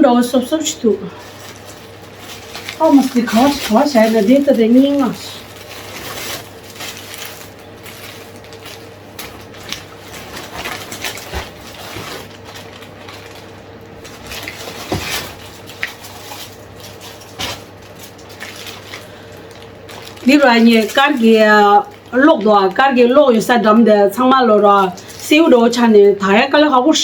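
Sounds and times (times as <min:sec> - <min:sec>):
faint hum: 0:00.0 - 0:27.0
rustling: 0:01.1 - 0:22.2.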